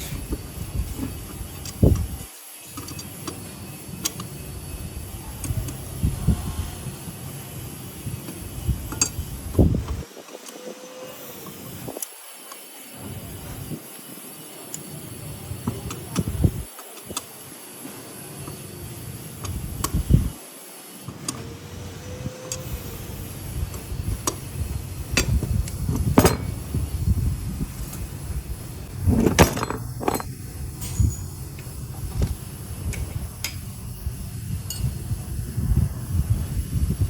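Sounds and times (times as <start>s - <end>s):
steady low rumble: 4.6s - 10.1s, 21.8s - 37.0s
metallic clinks and knocks: 29.2s - 31.8s, 34.6s - 35.0s.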